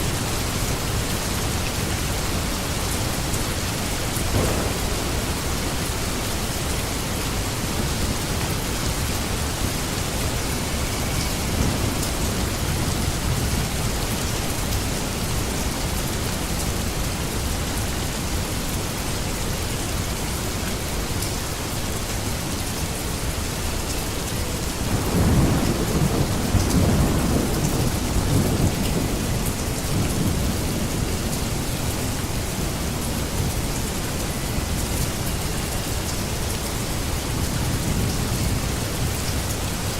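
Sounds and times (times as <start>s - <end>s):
steady rain falling: 0.0s - 39.9s
thunder rumbling: 4.1s - 15.3s, 24.8s - 31.6s.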